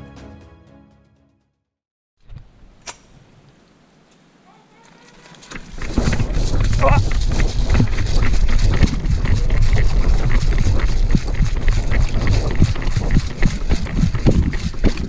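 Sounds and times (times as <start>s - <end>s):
running footsteps: 4.5s - 15.0s
wind and movement rumble: 5.2s - 15.0s.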